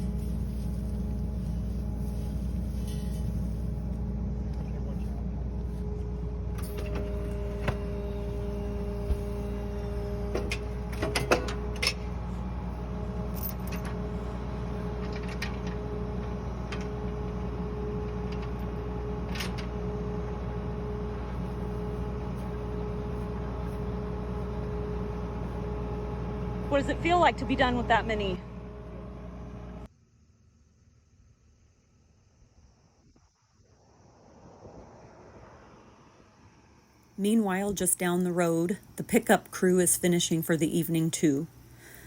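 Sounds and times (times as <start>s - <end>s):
tractor engine running: 0.0s - 29.9s.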